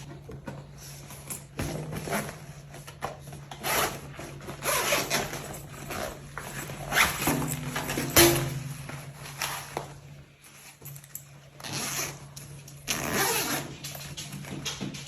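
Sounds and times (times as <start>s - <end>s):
rubbing and scraping of packaging: 0.0s - 10.8s.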